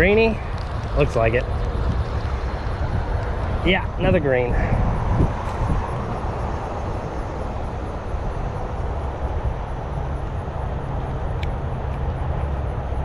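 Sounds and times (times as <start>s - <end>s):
highway traffic roar: 0.0s - 13.0s.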